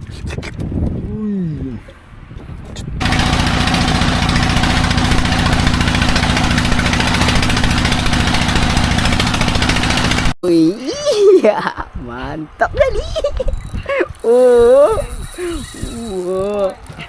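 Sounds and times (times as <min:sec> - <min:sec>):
boat engine running: 0:03.0 - 0:10.4.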